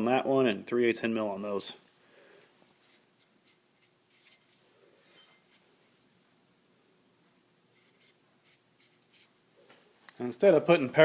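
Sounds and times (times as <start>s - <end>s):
faint scratching sounds: 2.7s - 6.5s, 7.7s - 10.8s.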